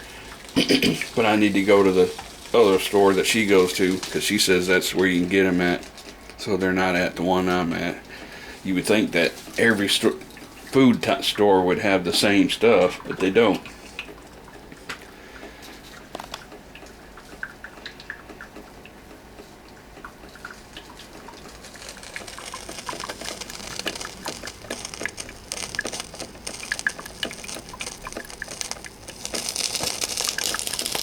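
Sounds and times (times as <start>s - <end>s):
coffee maker hiss: 0.0s - 13.9s, 20.6s - 31.0s
coffee maker gurgling and sputtering: 0.0s - 31.0s.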